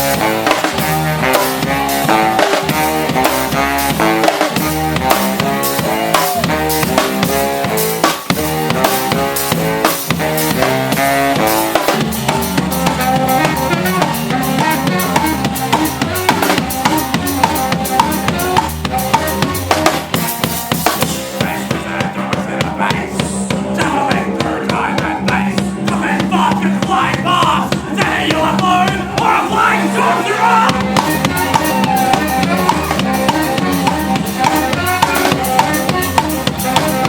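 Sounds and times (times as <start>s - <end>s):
bass line: 0.0s - 37.0s
drum kit groove: 0.0s - 37.0s
rock band playing: 0.0s - 37.0s
cymbals: 29.4s - 37.0s.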